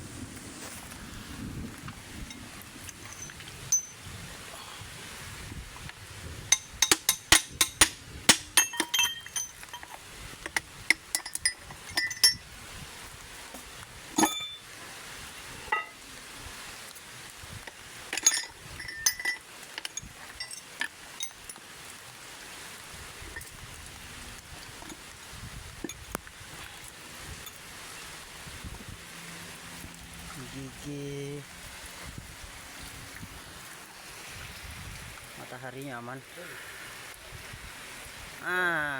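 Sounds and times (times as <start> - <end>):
metal tools clinking: 2.3 - 4.0, 6.5 - 12.4, 14.2 - 14.7, 15.7 - 16.0, 18.1 - 21.6.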